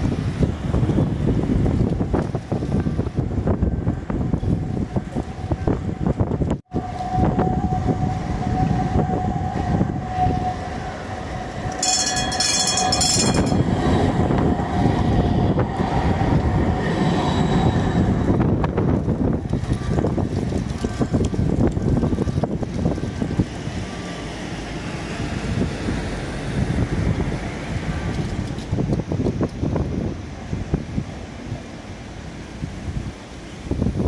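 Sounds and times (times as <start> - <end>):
tram rumbling on rails: 0.0 - 34.0
steady whine: 6.7 - 18.9
shrill high-pitched squeal: 6.8 - 14.2.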